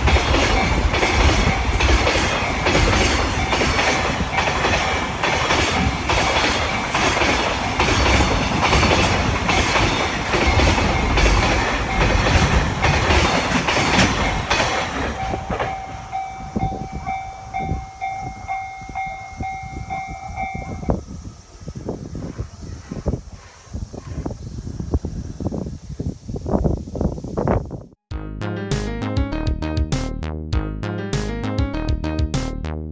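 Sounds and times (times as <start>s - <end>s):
train wheels clacking over rails: 0.0s - 24.2s
crossing alarm electronic dings: 8.9s - 12.6s, 14.2s - 21.0s.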